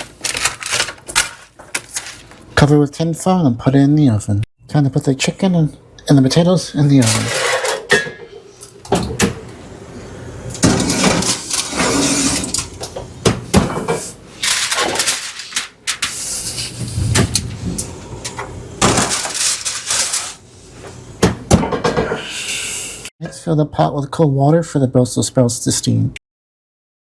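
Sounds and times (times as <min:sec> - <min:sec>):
metal pans clunking and scraping: 0:06.9 - 0:09.5, 0:10.5 - 0:16.2, 0:16.8 - 0:22.3
oven door shutting: 0:08.8 - 0:15.4, 0:16.8 - 0:20.4.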